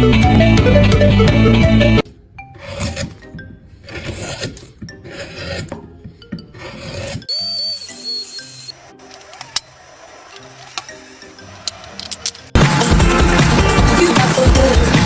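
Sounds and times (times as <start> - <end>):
music: 0.0 - 15.0
hand tool rasping on wood: 2.6 - 3.2, 3.8 - 5.8, 6.5 - 11.0.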